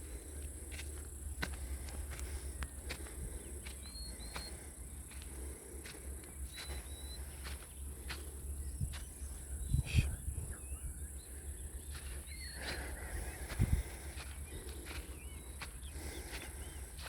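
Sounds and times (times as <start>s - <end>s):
insects droning: 0.0s - 17.0s
bird chirping: 3.3s - 5.4s, 6.1s - 17.0s.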